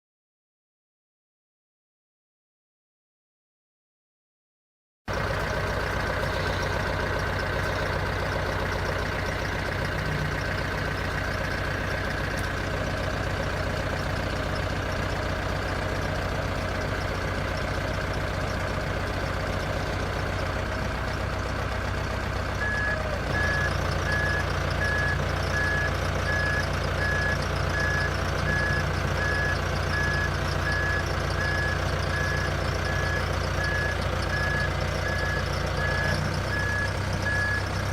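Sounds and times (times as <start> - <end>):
heavy vehicle engine running: 5.1 - 37.9
reversing alarm beeping: 22.6 - 37.8.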